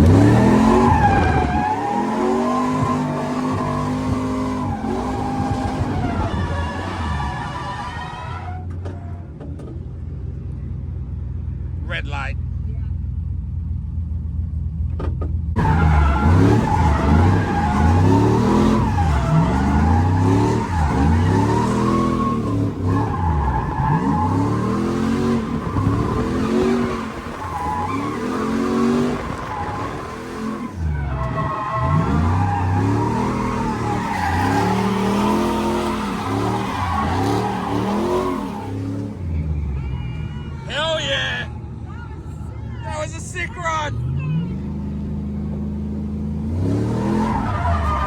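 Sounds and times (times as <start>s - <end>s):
car engine revving hard: 0.0s - 7.6s, 15.6s - 39.2s, 44.0s - 48.0s
tyres squealing: 15.6s - 41.2s, 47.0s - 48.0s.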